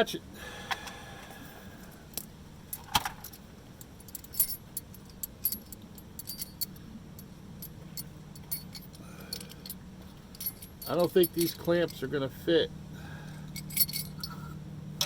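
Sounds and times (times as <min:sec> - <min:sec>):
steady low hum: 0:00.0 - 0:15.0
metal tools clinking: 0:02.2 - 0:12.4, 0:13.4 - 0:14.5.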